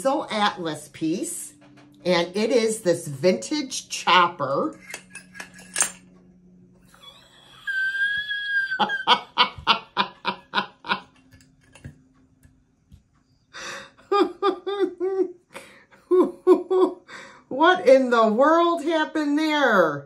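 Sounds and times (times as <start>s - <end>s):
woman laughing hard: 7.0s - 11.2s, 13.6s - 17.1s.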